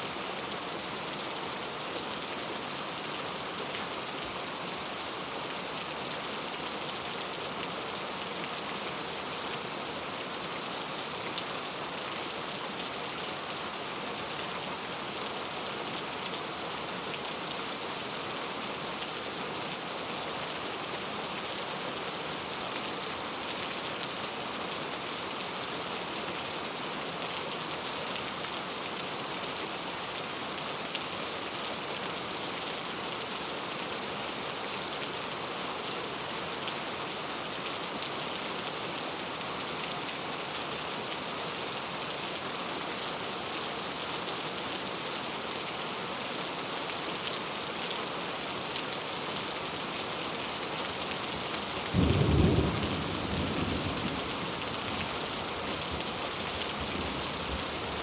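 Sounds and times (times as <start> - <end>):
heavy rain hissing: 49.0 - 58.0
low clap of thunder: 52.0 - 54.4.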